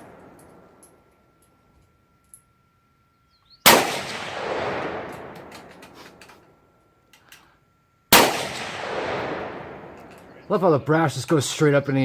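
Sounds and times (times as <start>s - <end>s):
gunshot with echo: 3.7s - 5.7s, 8.1s - 10.0s.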